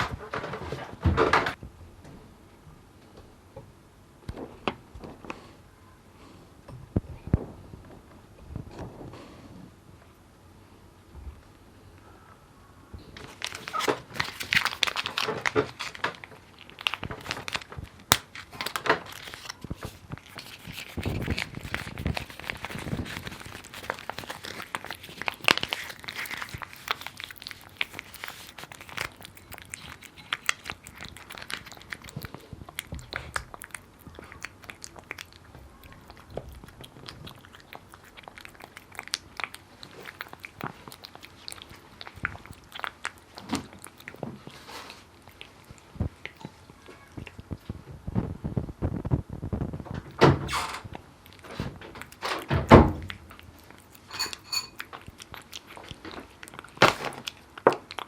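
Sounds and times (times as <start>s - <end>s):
cat crunching dry kibble: 13.2s - 50.1s, 50.9s - 58.0s.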